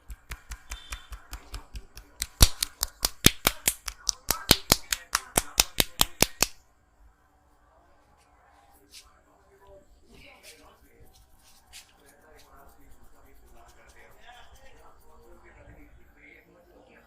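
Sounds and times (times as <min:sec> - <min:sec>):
rapid hand claps on a head: 0:00.0 - 0:06.6.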